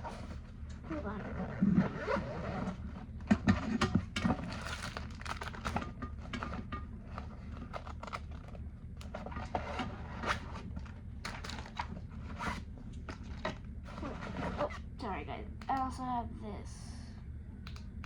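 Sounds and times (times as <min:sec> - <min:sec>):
steady low hum: 0:00.0 - 0:18.0
hands rummaging through kit: 0:04.2 - 0:06.7, 0:07.5 - 0:09.2, 0:10.2 - 0:14.6
small clicks and taps: 0:17.6 - 0:18.0.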